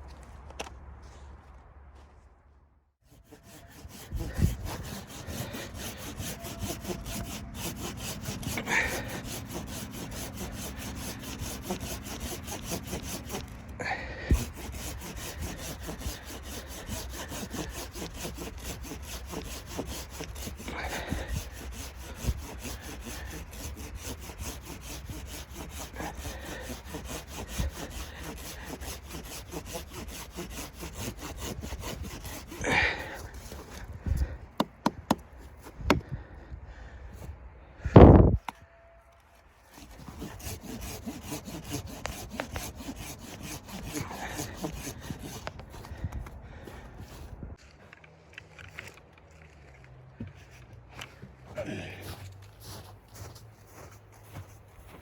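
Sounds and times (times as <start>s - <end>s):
saw cutting through wood: 3.0s - 36.1s, 39.2s - 47.7s.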